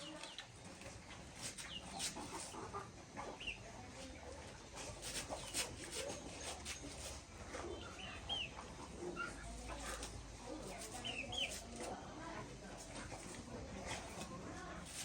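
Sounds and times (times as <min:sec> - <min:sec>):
chickens clucking: 0:00.0 - 0:15.0.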